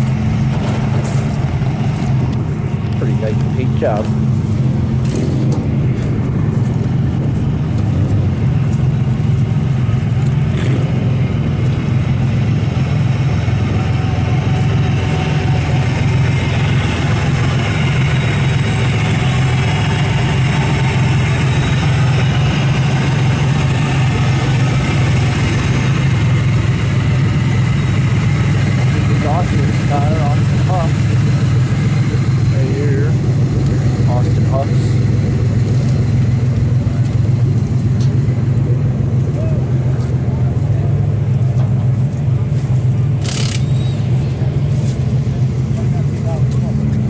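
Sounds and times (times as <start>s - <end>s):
loud car engine running: 0.0s - 47.0s
sharp clicks: 43.2s - 43.7s.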